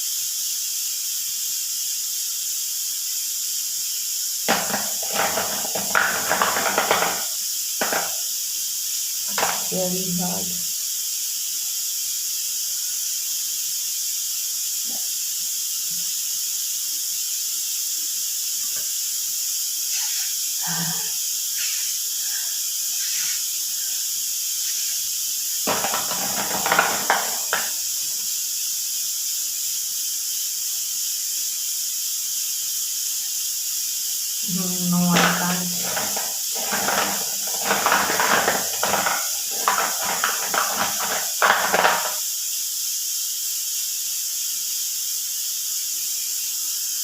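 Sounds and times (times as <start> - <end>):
steady high-pitched hiss: 0.0 - 47.0
scraping handling noises: 35.2 - 42.2.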